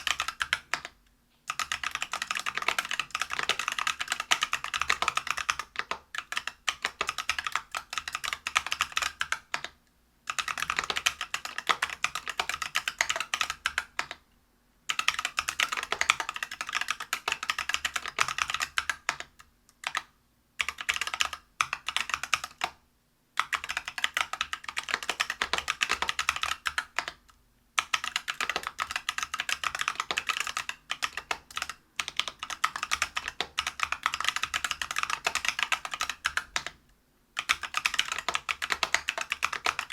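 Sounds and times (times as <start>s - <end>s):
mechanical keyboard typing: 0.0s - 14.2s, 14.9s - 22.8s, 23.4s - 36.8s, 37.4s - 39.9s.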